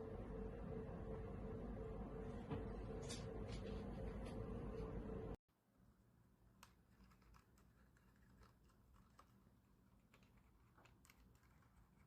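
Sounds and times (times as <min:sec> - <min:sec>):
low hum: 0:00.0 - 0:05.4.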